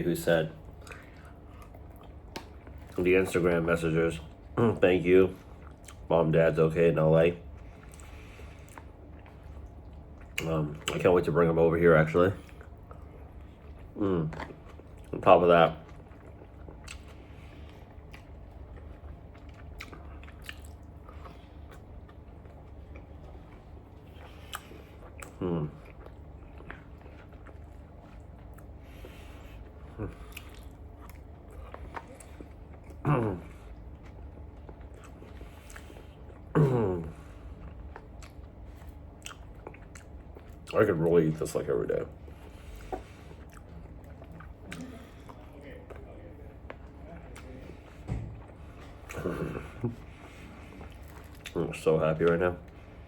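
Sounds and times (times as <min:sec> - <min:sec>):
steady low hum: 0:00.0 - 0:53.0
person chewing noodles: 0:00.6 - 0:03.6, 0:04.2 - 0:06.1, 0:07.4 - 0:11.4, 0:12.0 - 0:53.0.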